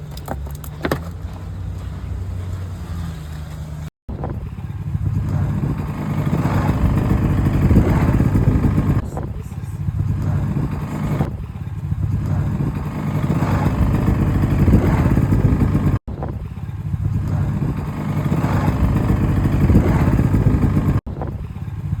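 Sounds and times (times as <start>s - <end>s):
snowmobile engine revving: 4.5s - 16.0s, 16.9s - 21.0s.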